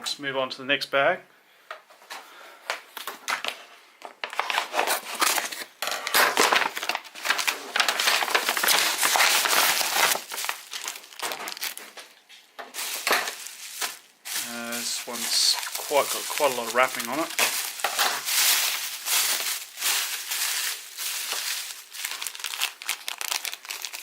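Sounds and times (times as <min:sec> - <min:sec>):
packaging crinkling: 0:04.3 - 0:24.0.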